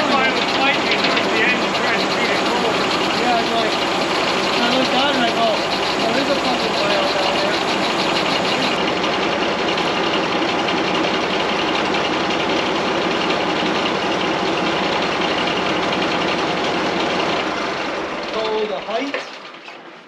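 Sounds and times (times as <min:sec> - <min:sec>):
sawmill diesel engine and saw: 0:00.0 - 0:18.8.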